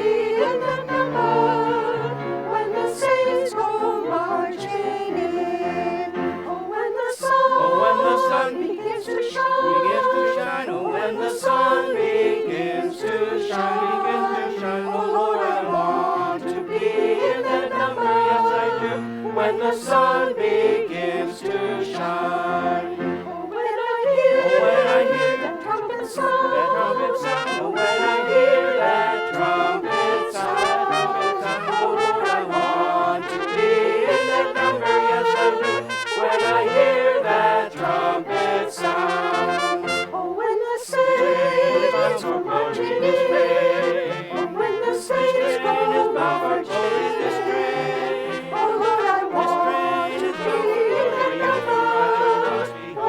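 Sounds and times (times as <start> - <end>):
brass ensemble playing gospel: 24.1 - 53.0.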